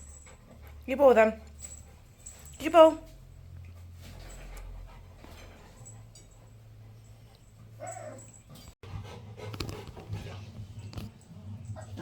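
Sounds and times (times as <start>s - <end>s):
dog whining: 7.8s - 8.7s.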